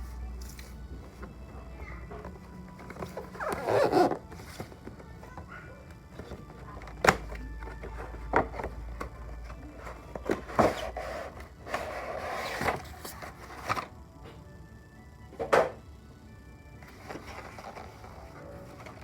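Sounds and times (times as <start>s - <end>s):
packaging scraping rustle: 2.8s - 4.9s, 10.2s - 13.9s.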